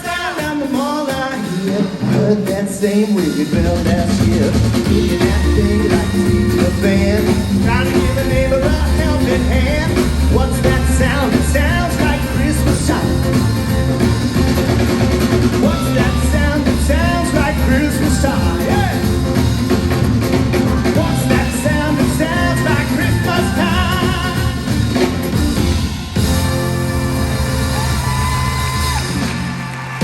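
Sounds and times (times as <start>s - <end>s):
person singing: 0.0s - 14.3s, 15.4s - 19.4s, 20.5s - 24.8s
live rock band playing: 0.0s - 30.0s.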